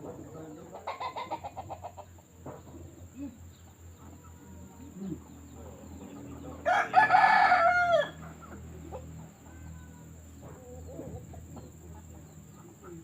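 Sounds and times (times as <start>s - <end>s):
rooster crowing: 6.6s - 8.2s.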